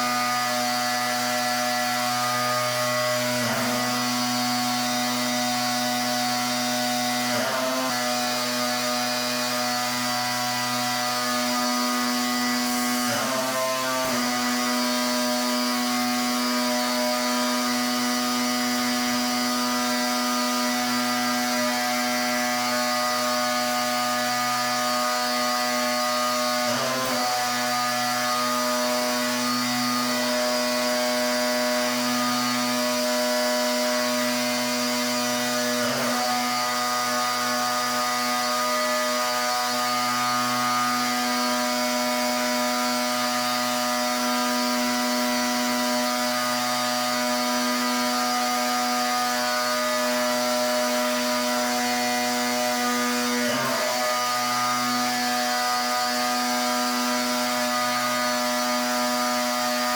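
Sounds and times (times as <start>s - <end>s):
pressure washer motor and pump: 0.0s - 59.9s.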